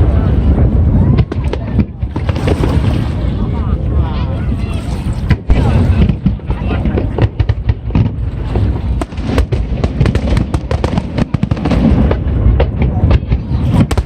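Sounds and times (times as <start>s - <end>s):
fireworks booming: 0.0s - 14.0s
fireworks crackling bursts: 0.0s - 14.0s.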